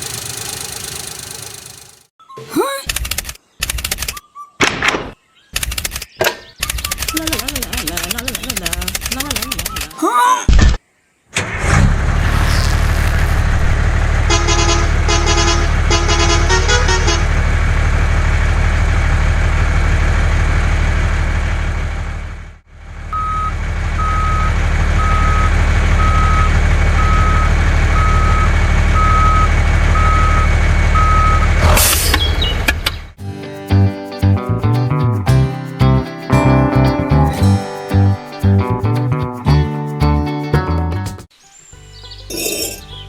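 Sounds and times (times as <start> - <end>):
truck engine running: 0.0 - 2.1, 11.8 - 33.2
multi-tone horn honking: 12.2 - 17.4
reversing alarm beeping: 23.1 - 31.6.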